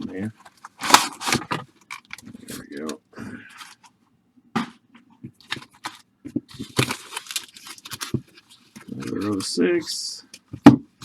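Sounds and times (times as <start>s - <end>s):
plastic wrapper crinkling and tearing: 0.4s - 2.8s, 5.5s - 9.5s
cards rustling: 0.4s - 3.9s, 5.4s - 9.7s.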